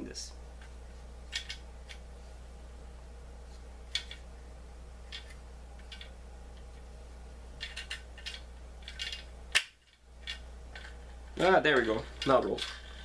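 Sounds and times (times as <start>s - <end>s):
plastic toy wheels clicking: 10.2s - 13.0s.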